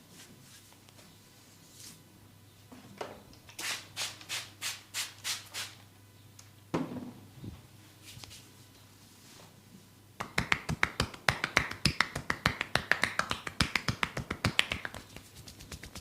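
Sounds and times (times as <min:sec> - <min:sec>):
hands slapping skin: 0:10.2 - 0:16.0.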